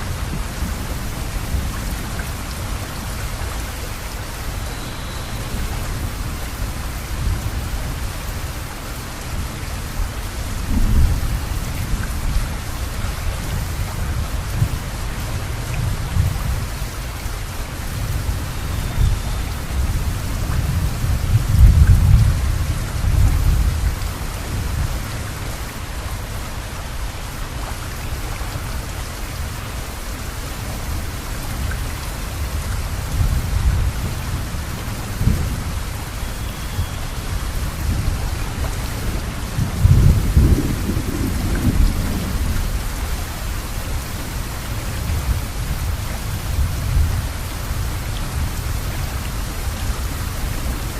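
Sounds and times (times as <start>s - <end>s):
steady rain falling: 0.0s - 50.9s
thunder rumbling: 37.2s - 44.0s.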